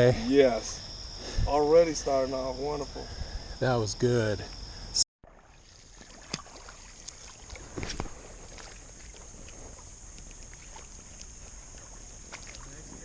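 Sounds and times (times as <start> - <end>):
high-pitched insect drone: 0.0 - 5.0
faint water movement: 4.4 - 13.0.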